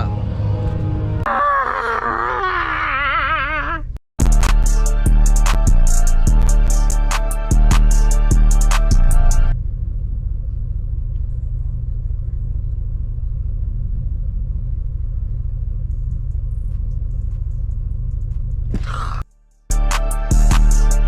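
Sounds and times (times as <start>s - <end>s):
filtered hip-hop beat: 4.2s - 9.5s, 19.7s - 21.0s.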